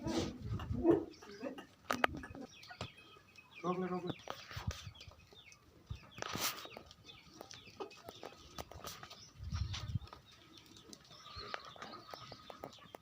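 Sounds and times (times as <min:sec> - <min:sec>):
chickens clucking: 0:00.0 - 0:13.0
small birds chirping: 0:00.5 - 0:13.0
rustling scrape: 0:06.2 - 0:06.9.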